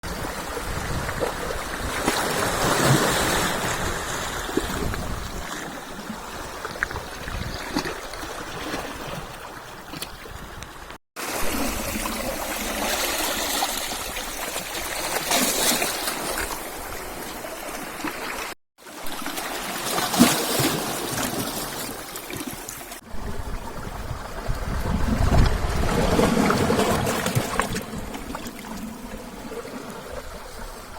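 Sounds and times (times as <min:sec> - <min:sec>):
waves washing at shore: 0:00.1 - 0:10.0, 0:10.7 - 0:30.9.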